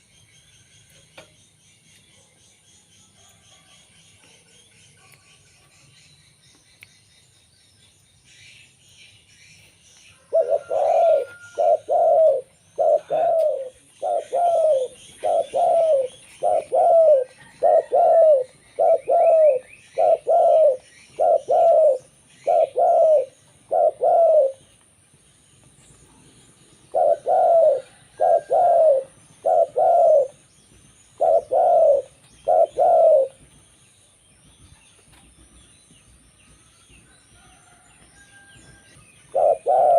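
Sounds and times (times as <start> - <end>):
small birds chirping: 0.0 - 39.9
dove cooing: 10.2 - 24.7, 26.9 - 30.4, 31.1 - 33.5, 39.3 - 39.9.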